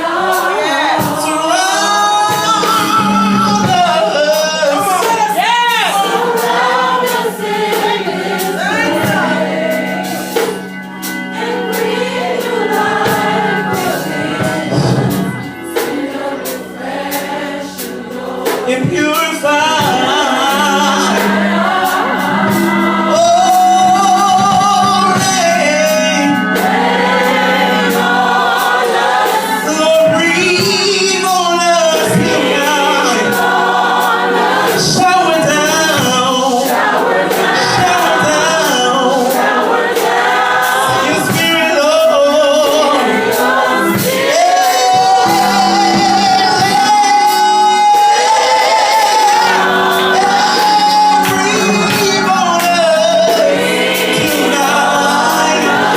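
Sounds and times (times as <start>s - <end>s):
gospel choir singing: 0.0s - 55.9s.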